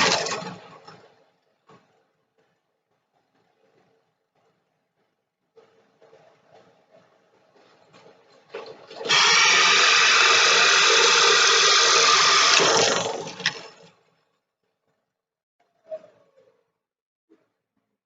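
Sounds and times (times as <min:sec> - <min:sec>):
drill bit cutting wood: 0:09.1 - 0:13.6
drill press motor hum: 0:09.1 - 0:13.9.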